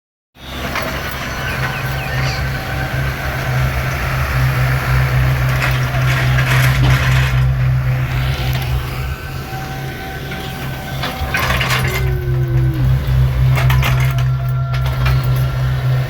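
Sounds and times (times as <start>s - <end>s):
excavator diesel engine running: 0.4s - 16.0s.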